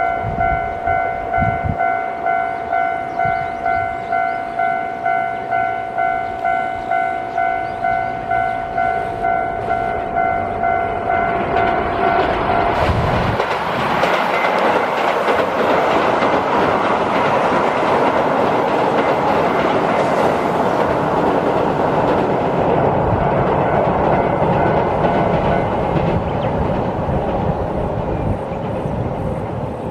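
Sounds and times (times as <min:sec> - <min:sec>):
level crossing warning bell: 0:00.0 - 0:12.8, 0:23.6 - 0:26.0
electric train rumbling over bridge: 0:00.0 - 0:29.9.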